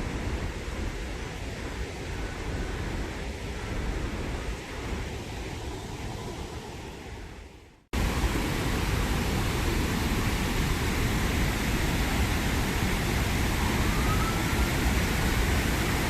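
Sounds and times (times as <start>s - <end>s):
river water rushing over rocks: 8.0s - 16.0s
faint rising whistle: 13.6s - 15.3s.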